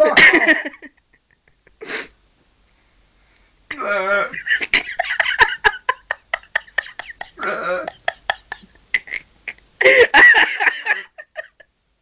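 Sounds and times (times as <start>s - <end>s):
man hiccupping: 3.7s - 4.6s, 7.1s - 9.7s.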